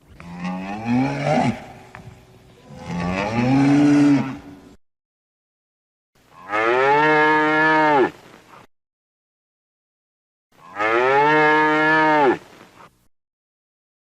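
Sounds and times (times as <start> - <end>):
cow mooing: 0.1 - 2.0, 2.6 - 4.7, 6.4 - 8.1, 10.6 - 12.4.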